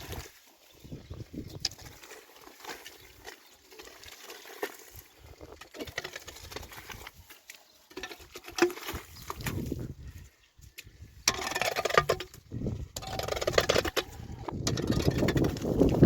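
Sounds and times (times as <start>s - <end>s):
livestock scuffing and pattering: 0.0s - 11.0s.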